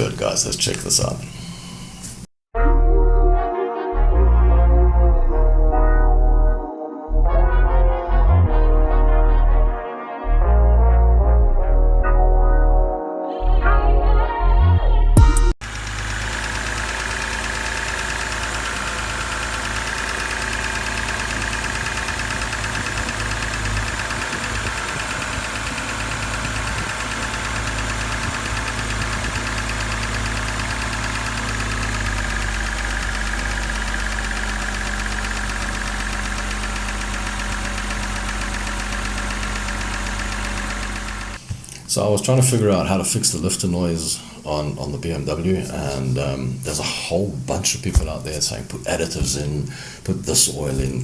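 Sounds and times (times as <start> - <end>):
music: 2.5 - 15.6
car engine idling: 15.6 - 41.4
fast engine ticking: 15.6 - 41.4.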